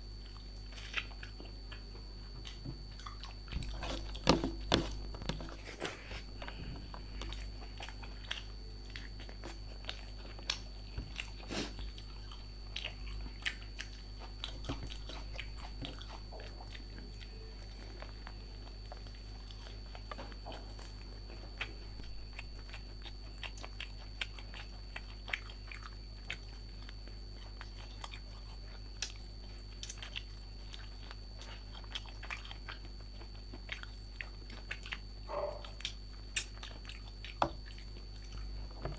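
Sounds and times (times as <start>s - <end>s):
chewing and crunching food: 0.0s - 38.9s
faint electrical hum: 0.0s - 38.9s
wet mouth clicks: 35.8s - 37.8s.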